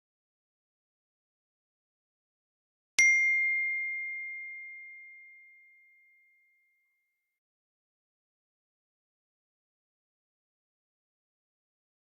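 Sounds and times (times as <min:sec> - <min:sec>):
bell-like ding: 0:03.0 - 0:07.1.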